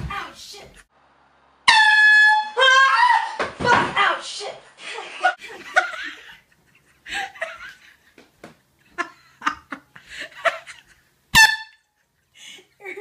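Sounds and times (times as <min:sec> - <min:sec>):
woman laughing: 0:04.8 - 0:08.1, 0:08.8 - 0:11.1, 0:12.2 - 0:13.0.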